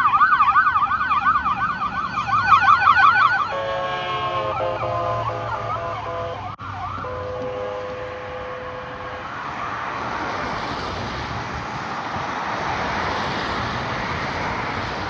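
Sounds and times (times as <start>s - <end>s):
tyres on road: 0.0s - 15.0s
wind: 0.0s - 15.0s
ambulance air horn: 2.2s - 10.1s.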